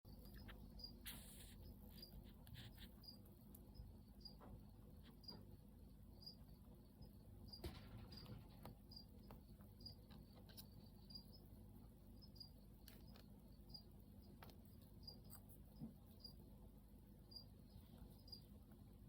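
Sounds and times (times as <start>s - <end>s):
crickets chirping: 0.1s - 19.0s.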